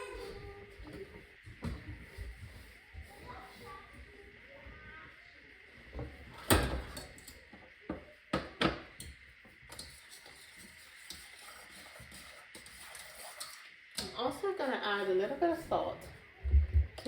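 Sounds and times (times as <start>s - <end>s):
kitchen knocks and clunks: 5.9s - 7.1s, 7.9s - 8.9s.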